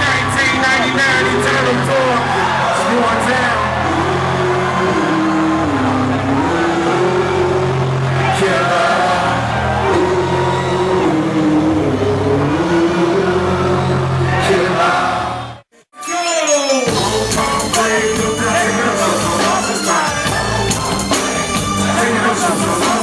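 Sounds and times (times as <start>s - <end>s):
hip-hop beat with heavy bass: 16.0s - 23.0s.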